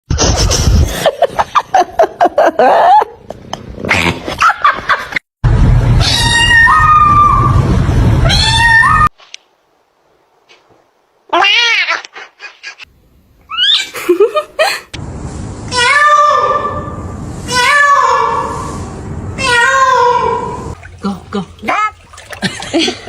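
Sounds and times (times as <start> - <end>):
cat yowling: 6.0 - 7.6.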